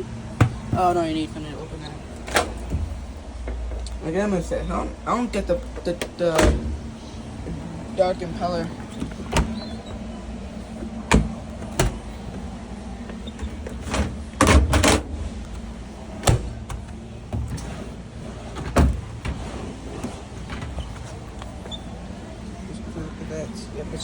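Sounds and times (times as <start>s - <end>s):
washing machine knocks and clunks: 0.0s - 1.2s, 2.2s - 3.7s, 5.7s - 6.9s, 9.0s - 9.8s, 10.8s - 12.3s, 13.4s - 17.6s, 18.5s - 19.5s.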